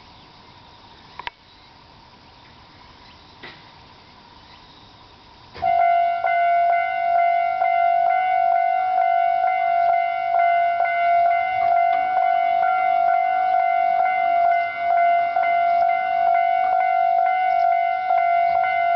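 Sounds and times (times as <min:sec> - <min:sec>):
level-crossing warning bell: 0:05.6 - 0:18.9.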